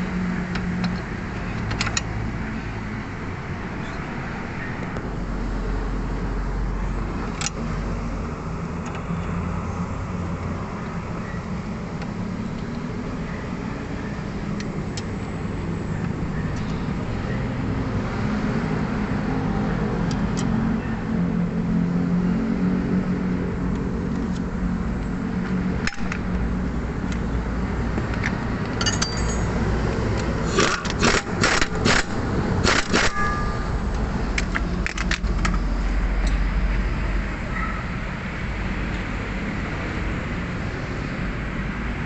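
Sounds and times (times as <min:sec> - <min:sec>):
low rumble of traffic: 0:00.0 - 0:42.0
hand tools clinking and rattling: 0:28.7 - 0:29.6.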